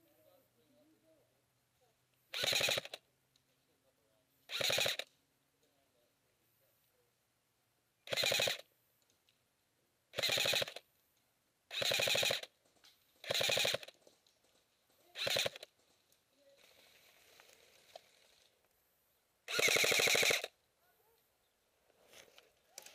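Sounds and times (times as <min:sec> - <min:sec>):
airsoft rifle automatic bursts: 0:02.3 - 0:03.0, 0:04.5 - 0:05.1, 0:08.0 - 0:08.7, 0:10.1 - 0:10.8, 0:11.7 - 0:12.5, 0:13.2 - 0:14.1, 0:15.1 - 0:15.7, 0:19.5 - 0:20.6.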